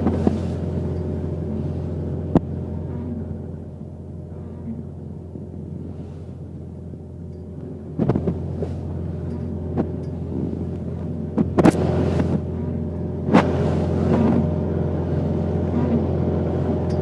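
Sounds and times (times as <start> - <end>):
hull knocking on waves: 0.0 - 1.1, 7.9 - 14.6
boat diesel engine humming: 0.0 - 17.0.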